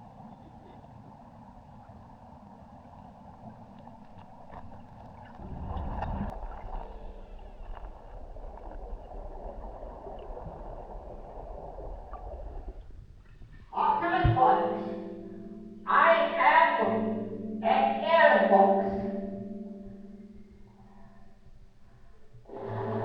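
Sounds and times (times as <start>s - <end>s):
rush of bubbling: 0.0s - 13.7s
muffled underwater noise: 0.0s - 23.0s.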